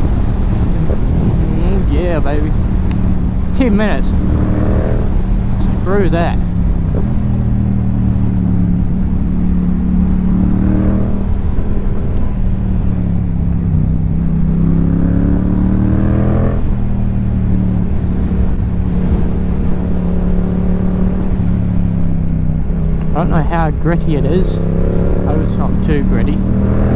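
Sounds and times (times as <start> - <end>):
motorcycle engine revving: 0.0 - 26.9
wind rumble: 0.0 - 26.9.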